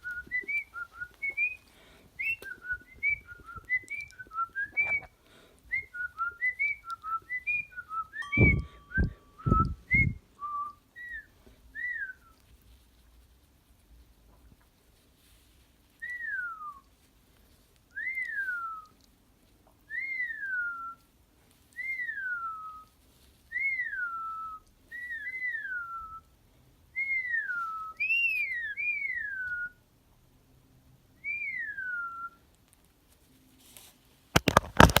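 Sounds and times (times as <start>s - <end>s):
whistle sliding downward: 8.2s - 10.2s.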